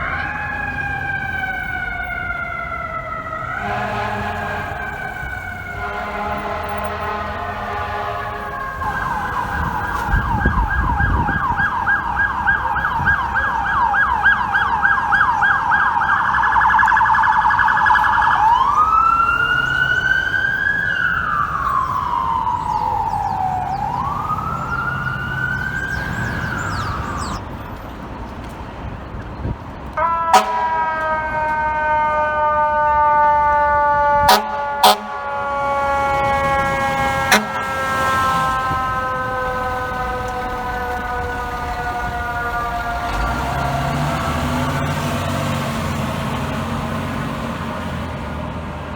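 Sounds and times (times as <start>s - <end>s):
siren wail: 0.0s - 27.5s, 30.0s - 48.9s
siren yelp warble: 8.2s - 27.4s, 30.0s - 44.9s.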